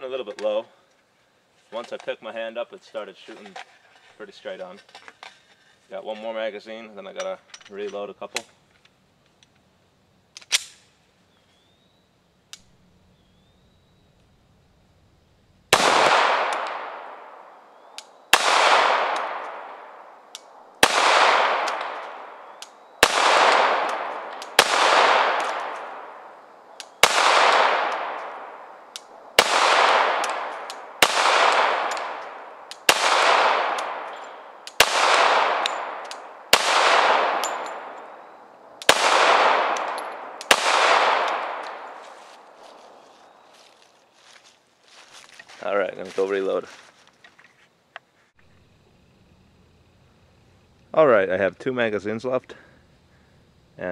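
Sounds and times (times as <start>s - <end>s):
pistol shots echoing: 15.7s - 43.0s.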